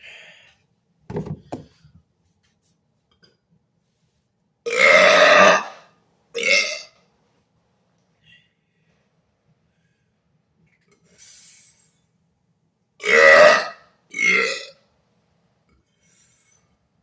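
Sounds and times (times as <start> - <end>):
man burping: 4.7 - 5.8, 6.4 - 6.9, 13.0 - 14.8.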